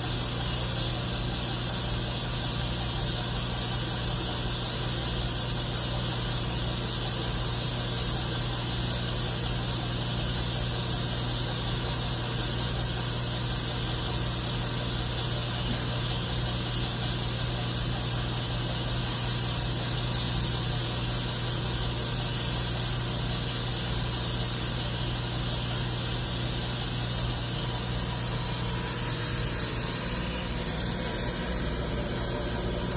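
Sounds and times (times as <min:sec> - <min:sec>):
saw blade and coolant hiss: 0:00.0 - 0:32.9
slab saw motor hum: 0:25.2 - 0:32.9.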